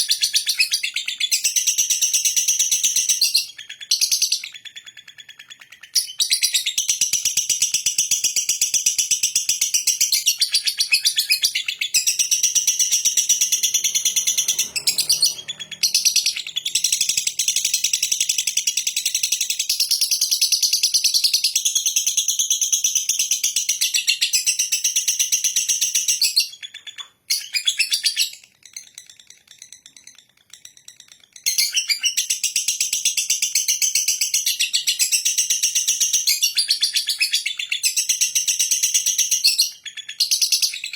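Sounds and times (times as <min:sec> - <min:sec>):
bird chattering trill: 0:10.0 - 0:21.2.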